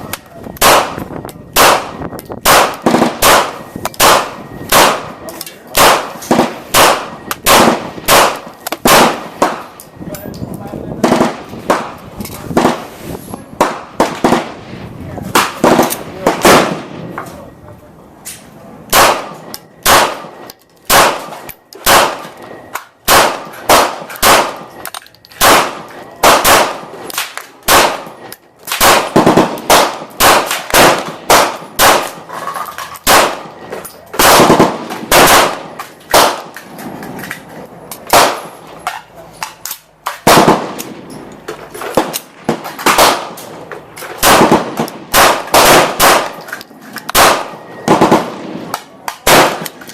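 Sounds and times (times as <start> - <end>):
pistol shots: 0.6 - 9.8, 11.0 - 12.9, 13.6 - 14.6, 15.3 - 17.0, 18.9 - 32.3, 33.0 - 36.8, 37.9 - 41.1, 41.8 - 49.9.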